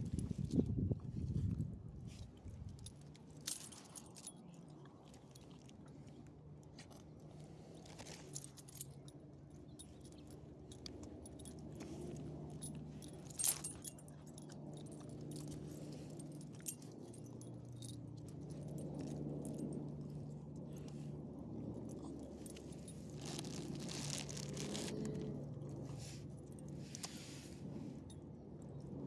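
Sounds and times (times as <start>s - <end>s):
low steady hum: 0.0s - 29.0s
dog tags jingling: 2.9s - 4.8s, 8.0s - 19.8s.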